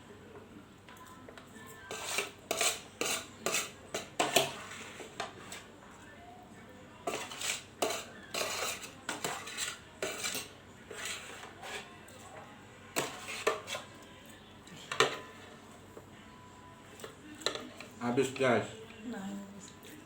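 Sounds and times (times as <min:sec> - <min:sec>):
cutlery scraping a dish: 0:01.8 - 0:05.7, 0:07.0 - 0:14.1, 0:14.7 - 0:15.6, 0:16.9 - 0:18.6.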